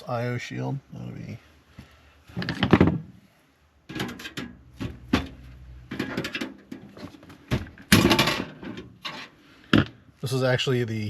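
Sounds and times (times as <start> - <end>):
clicking and scraping metal: 3.9 - 10.0
metal shield snapping into case: 7.5 - 8.8.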